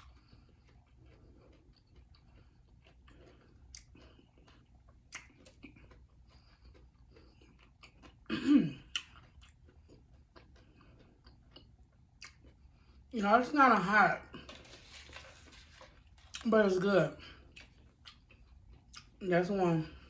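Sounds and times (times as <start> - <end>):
crunchy chewing: 0.0 - 13.1, 14.3 - 19.2
person clearing throat: 8.3 - 8.9.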